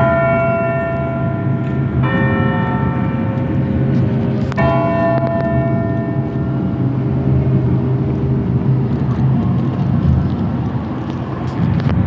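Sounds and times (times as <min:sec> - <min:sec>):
tower bells ringing: 0:00.0 - 0:08.2
low traffic rumble: 0:00.0 - 0:12.0.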